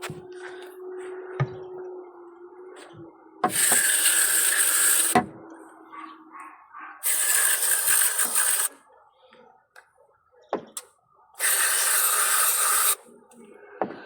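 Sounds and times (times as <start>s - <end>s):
aerosol spray can hissing: 3.5s - 5.2s, 7.0s - 8.7s, 11.4s - 13.0s.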